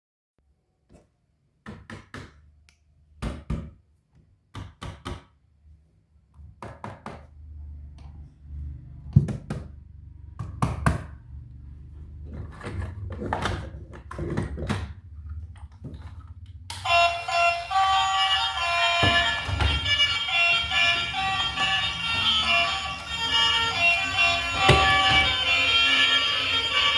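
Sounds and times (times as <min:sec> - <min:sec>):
music: 0:16.8 - 0:26.9
irregular thunks and knocks: 0:24.5 - 0:25.4.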